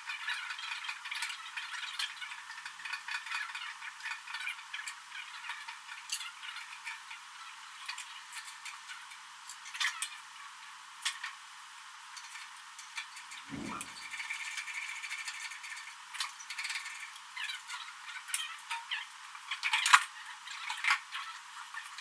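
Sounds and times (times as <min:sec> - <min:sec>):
faint low hum: 0:13.5 - 0:14.1.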